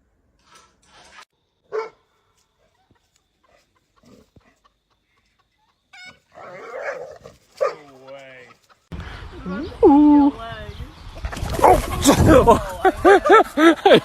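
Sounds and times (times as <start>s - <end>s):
dog barking: 1.7s - 2.0s, 6.4s - 7.9s.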